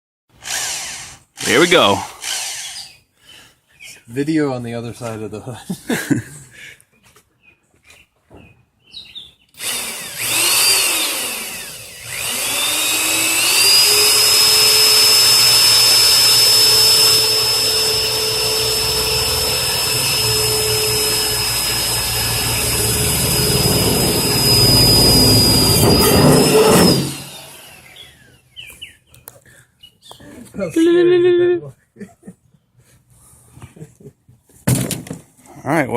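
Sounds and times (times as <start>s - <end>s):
electric drill whining: 0.4s - 3.0s, 9.6s - 28.4s.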